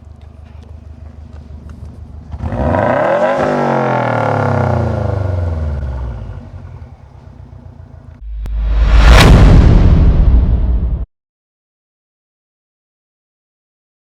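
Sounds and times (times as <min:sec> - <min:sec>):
car engine idling and revving: 0:00.0 - 0:08.5.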